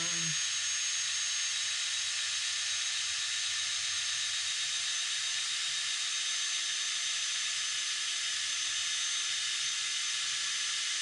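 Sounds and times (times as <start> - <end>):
power drill whining: 0.0 - 1.1.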